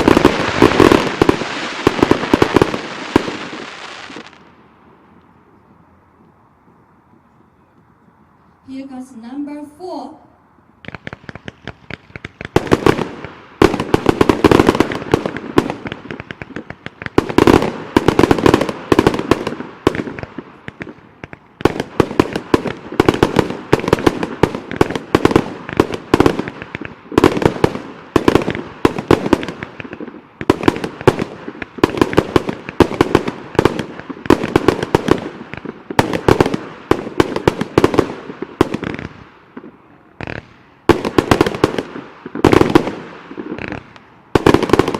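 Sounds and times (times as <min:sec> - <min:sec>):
fireworks firing rapid volley: 0:00.0 - 0:04.4, 0:10.8 - 0:44.9.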